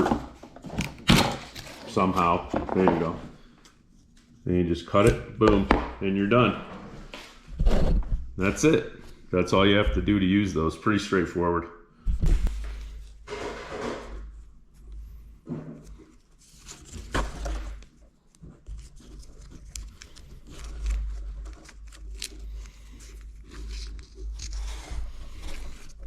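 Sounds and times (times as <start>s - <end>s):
rustles scrapes and clicks: 15.8s - 26.0s.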